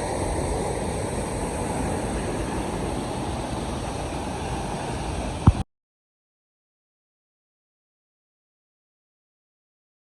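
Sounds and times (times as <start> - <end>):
waterfall roaring: 0.0 - 5.6.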